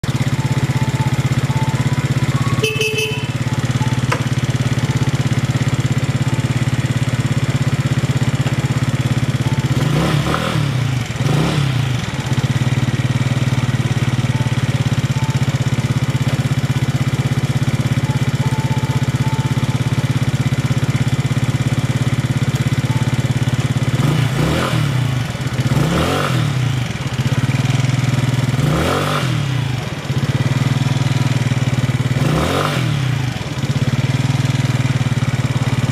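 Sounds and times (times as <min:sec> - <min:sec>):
throttle blips: 0:00.0 - 0:06.8, 0:13.6 - 0:20.8
motorcycle engine idling: 0:00.0 - 0:35.9.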